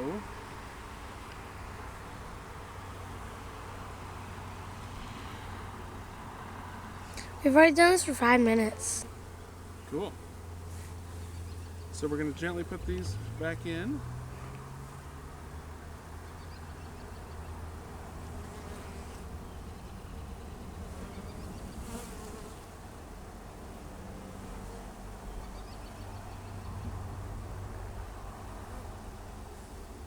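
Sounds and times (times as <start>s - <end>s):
bees buzzing: 2.0s - 13.4s.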